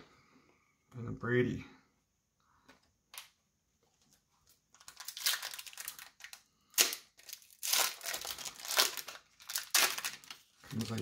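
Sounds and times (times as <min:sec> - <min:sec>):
foil wrapper crinkling and tearing: 0:04.4 - 0:11.0.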